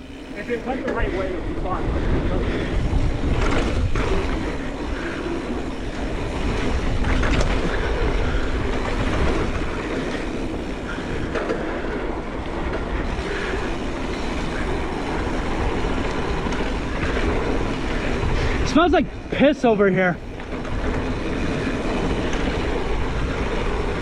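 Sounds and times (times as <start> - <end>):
bike tyre roar and rattle: 0.0 - 24.0
wind on microphone: 0.9 - 19.2.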